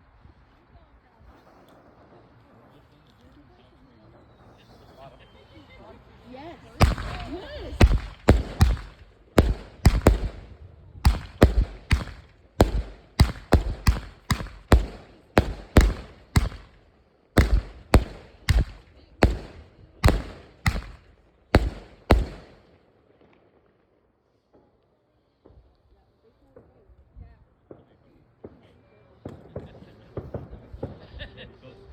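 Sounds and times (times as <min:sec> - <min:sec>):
fireworks bangs: 0:06.8 - 0:22.7.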